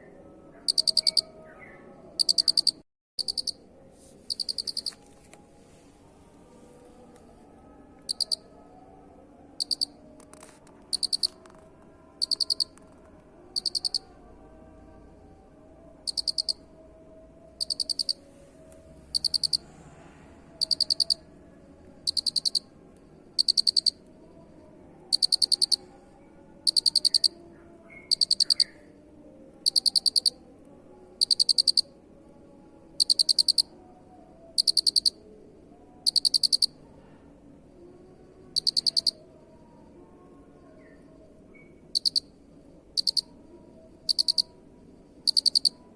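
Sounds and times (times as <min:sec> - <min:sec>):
cricket chirping: 0:00.6 - 0:01.4, 0:02.2 - 0:03.6, 0:04.3 - 0:05.0, 0:08.1 - 0:08.6, 0:09.6 - 0:10.1, 0:10.9 - 0:11.6, 0:12.2 - 0:12.8, 0:13.4 - 0:14.2, 0:16.0 - 0:18.2, 0:19.1 - 0:19.7, 0:20.5 - 0:21.3, 0:21.9 - 0:28.8, 0:29.6 - 0:30.5, 0:31.1 - 0:36.8, 0:37.6 - 0:45.9.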